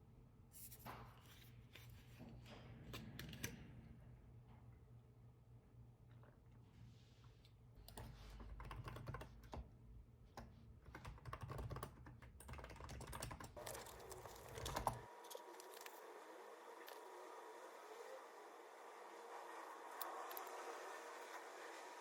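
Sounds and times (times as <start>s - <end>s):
typing on computer keyboard: 7.8s - 9.7s, 10.4s - 15.9s.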